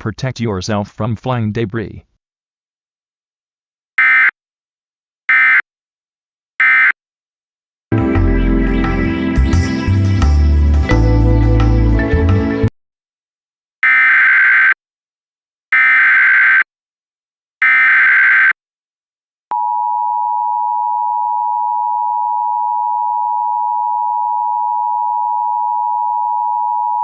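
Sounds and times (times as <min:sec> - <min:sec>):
buzzing data bursts: 0:04.0 - 0:04.3, 0:05.3 - 0:05.6, 0:06.6 - 0:06.9, 0:13.8 - 0:14.8, 0:15.8 - 0:16.6, 0:17.6 - 0:18.6.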